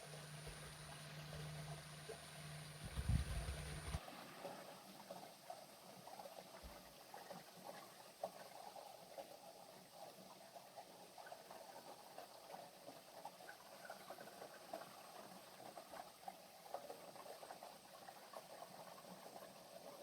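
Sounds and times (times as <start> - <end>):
water splashes and drips: 0.0 - 20.0.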